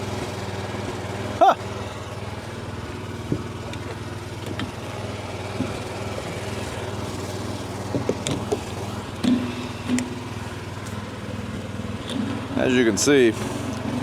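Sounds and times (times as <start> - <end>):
diesel engine idling: 0.0 - 14.0
light knocks and clicks: 7.9 - 10.1.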